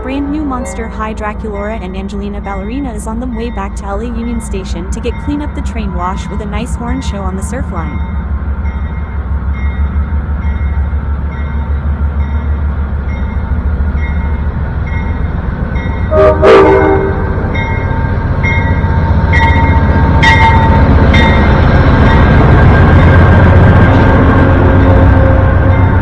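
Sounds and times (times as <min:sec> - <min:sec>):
diesel locomotive rumbling: 0:00.0 - 0:26.0
train horn blast: 0:16.1 - 0:17.6.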